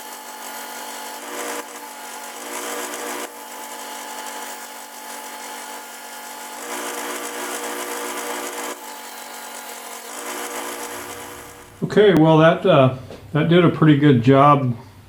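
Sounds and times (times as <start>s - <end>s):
wood sanding against spinning disc: 0.0s - 11.9s
table saw motor running: 0.0s - 12.0s.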